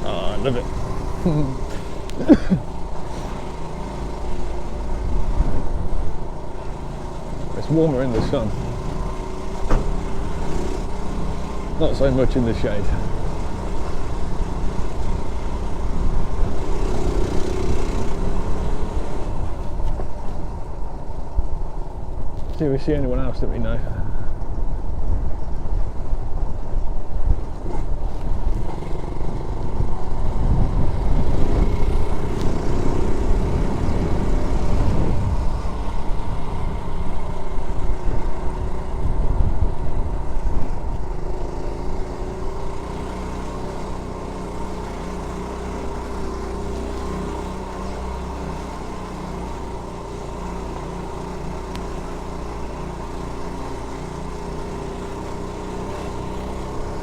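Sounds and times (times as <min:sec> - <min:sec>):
small motorbike engine running: 0:00.0 - 0:57.0
wind rumble on microphone: 0:04.4 - 0:06.7, 0:12.7 - 0:42.7.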